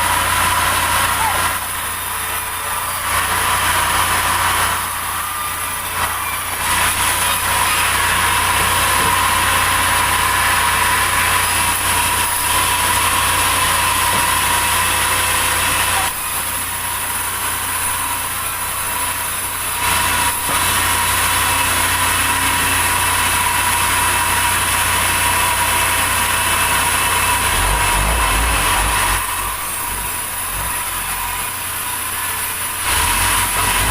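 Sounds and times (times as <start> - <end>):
sawmill saw cutting log: 0.0 - 33.9
low machine hum: 25.2 - 33.9.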